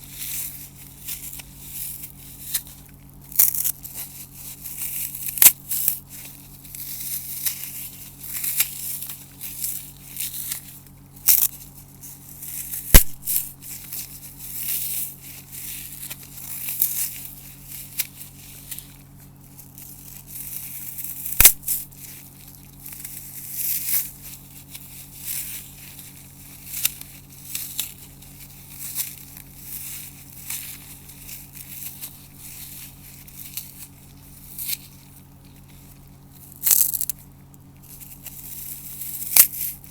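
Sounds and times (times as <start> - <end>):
floral foam crunching: 0.0 - 39.9
foam snapping: 12.6 - 13.8, 21.0 - 21.8.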